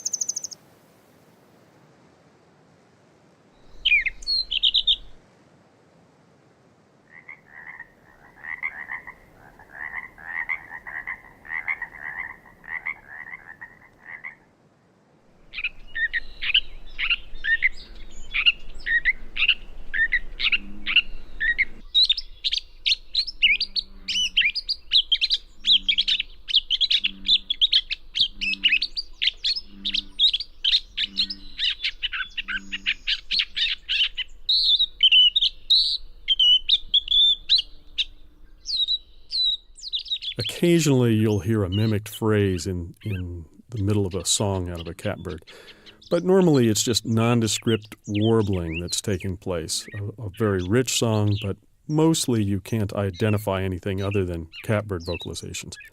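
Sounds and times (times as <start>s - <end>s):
bird singing warbled phrases: 0.0s - 0.6s, 3.6s - 5.2s, 7.1s - 14.4s, 15.4s - 55.9s.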